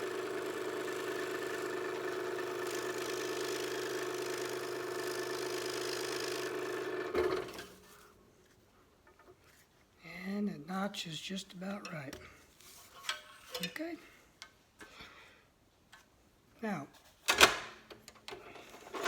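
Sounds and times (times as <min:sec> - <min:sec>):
scroll saw cutting plywood: 0:00.0 - 0:07.8.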